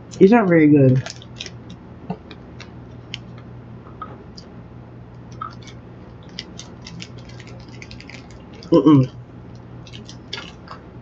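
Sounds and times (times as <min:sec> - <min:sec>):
faint low hum: 0:00.0 - 0:11.0
mouth chewing candy: 0:05.3 - 0:09.2, 0:09.8 - 0:10.9.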